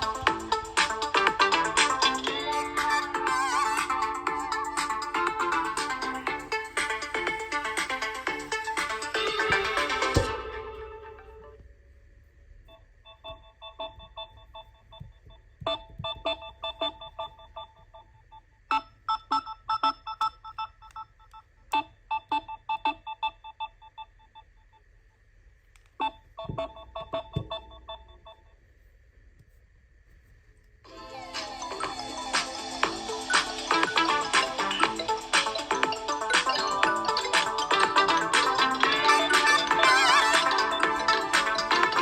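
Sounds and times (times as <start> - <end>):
smartphone ringtone: 0.0 - 11.5, 30.9 - 42.0.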